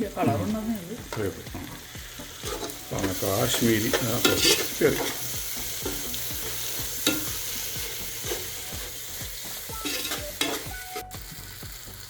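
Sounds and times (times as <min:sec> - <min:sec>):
spices sizzling in hot oil: 0:00.0 - 0:12.0
spoon scraping a pot: 0:03.8 - 0:09.0, 0:09.8 - 0:11.1.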